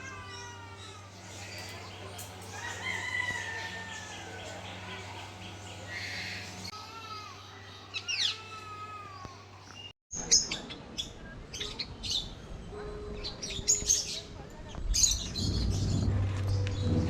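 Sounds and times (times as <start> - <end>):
birds whistling gliding calls: 0.9 - 12.7.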